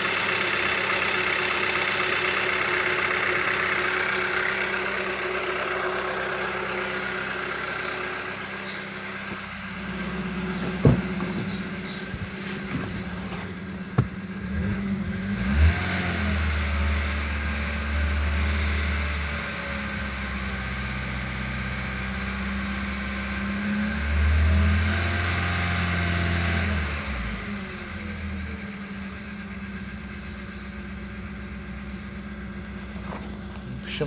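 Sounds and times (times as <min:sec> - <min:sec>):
engine extraneous noise: 0:00.0 - 0:21.9
petrol engine idling and revving: 0:00.0 - 0:34.0.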